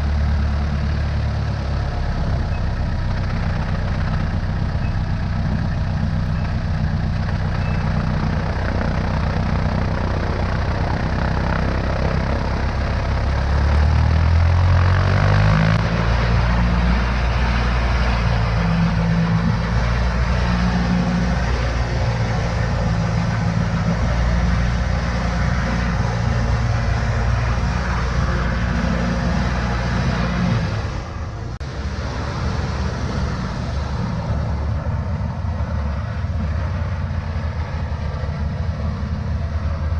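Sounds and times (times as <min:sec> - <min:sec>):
airplane engine and propeller: 0:00.0 - 0:39.9
air rushing past: 0:15.5 - 0:39.9.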